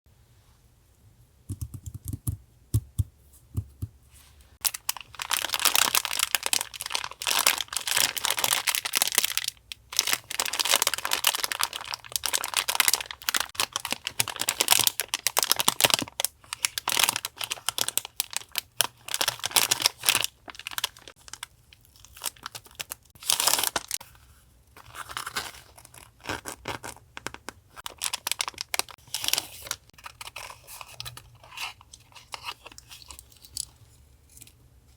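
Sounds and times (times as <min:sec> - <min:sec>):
packaging paper tearing and crinkling: 0:22.0 - 0:24.0.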